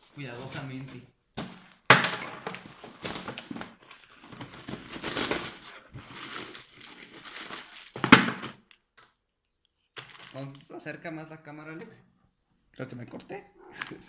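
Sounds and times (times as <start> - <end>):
plastic wrapper crinkling: 2.4 - 8.8, 10.0 - 10.7.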